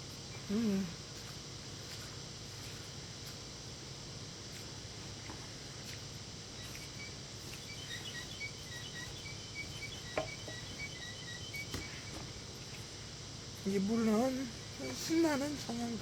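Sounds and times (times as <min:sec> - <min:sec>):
steady background hiss: 0:00.0 - 0:16.0
rapid high-pitched chirping: 0:06.6 - 0:12.9.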